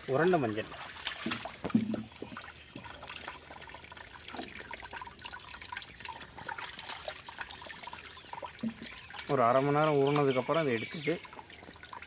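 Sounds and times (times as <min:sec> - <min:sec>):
light splashes: 0:00.0 - 0:03.4
water trickling and dripping: 0:00.0 - 0:12.0.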